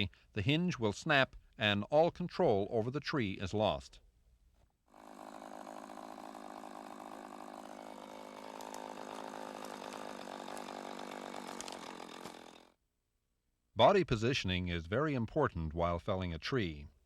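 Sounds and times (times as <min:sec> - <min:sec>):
chainsaw running: 0:04.9 - 0:12.8.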